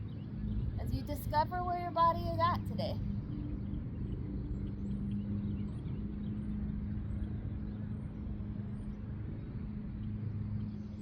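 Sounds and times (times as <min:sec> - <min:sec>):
motor traffic rumble: 0:00.0 - 0:11.0.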